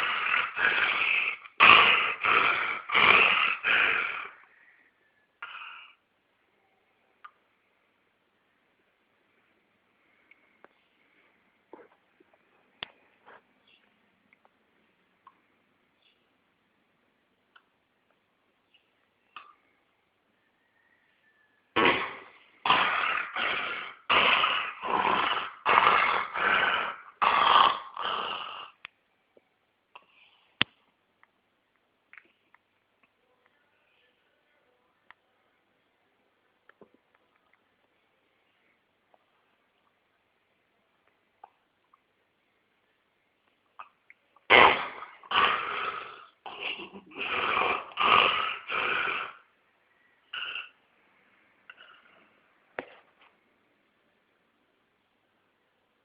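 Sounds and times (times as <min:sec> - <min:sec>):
pet snoring: 0:00.0 - 0:04.5, 0:05.4 - 0:06.0, 0:21.8 - 0:28.8, 0:44.5 - 0:49.5, 0:50.3 - 0:50.8.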